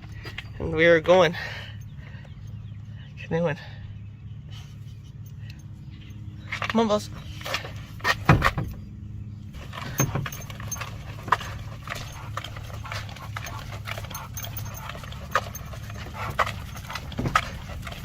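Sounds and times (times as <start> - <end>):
dog footsteps: 9.6 - 18.0.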